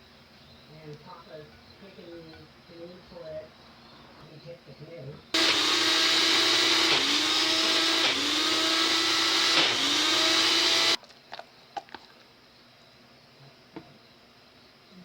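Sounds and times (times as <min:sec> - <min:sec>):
blender motor running: 0:05.4 - 0:11.0.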